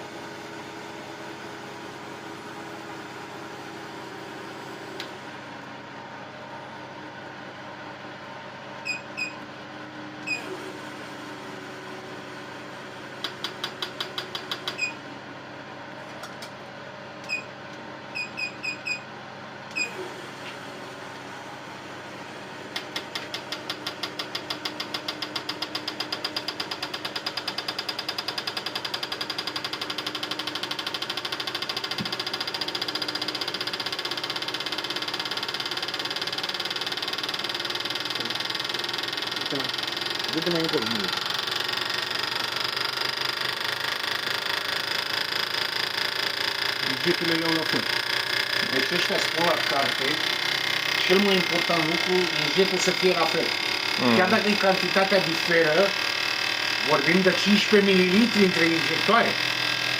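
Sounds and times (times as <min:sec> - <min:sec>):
test bench hum: 0:00.0 - 0:59.9.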